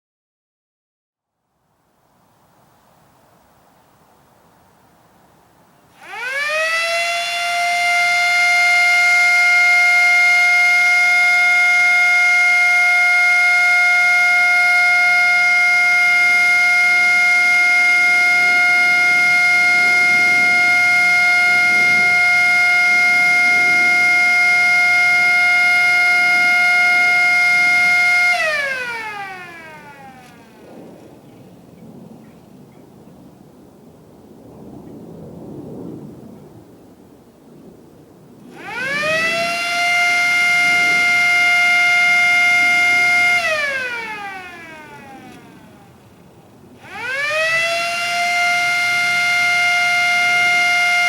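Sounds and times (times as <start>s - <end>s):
siren wailing: 5.9s - 31.0s, 38.5s - 51.0s.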